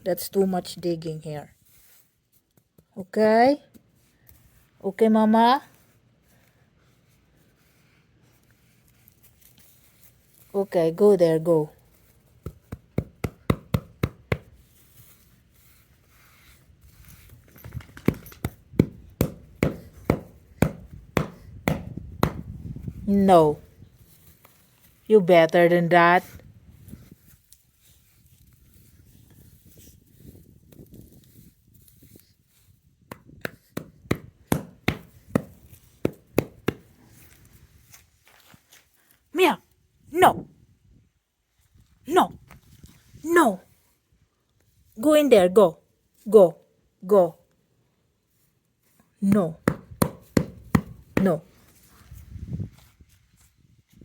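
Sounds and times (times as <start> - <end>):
dog scratching dirt digging: 7.1 - 38.8
sharp chopping knocks: 18.8 - 22.5, 33.1 - 36.8, 49.6 - 51.3.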